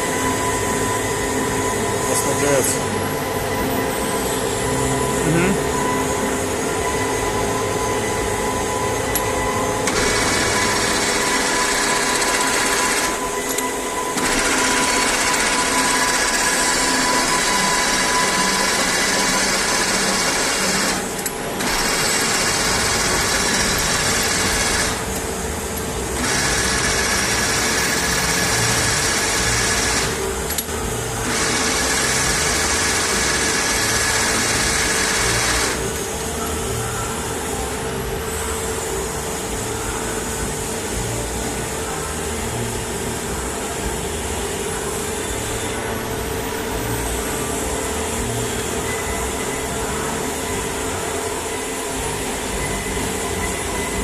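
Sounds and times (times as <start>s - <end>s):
lathe gear whine: 0.0s - 54.0s.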